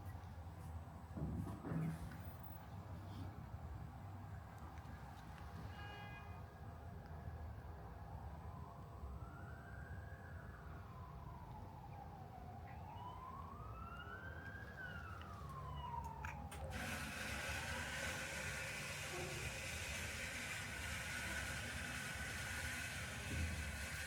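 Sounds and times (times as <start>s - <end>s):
siren wailing: 9.2s - 16.7s
loud even hiss: 16.7s - 24.0s.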